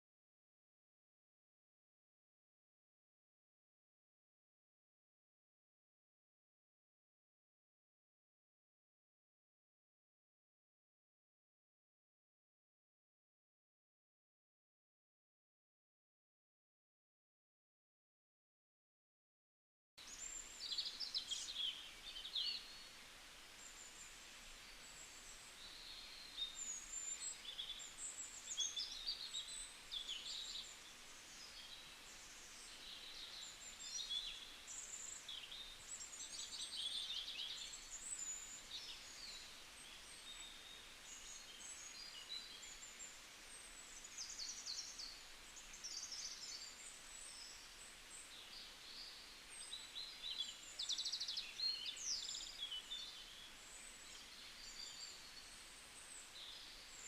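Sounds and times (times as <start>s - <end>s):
faint background hiss: 20.0s - 57.0s
small birds chirping: 20.0s - 57.0s.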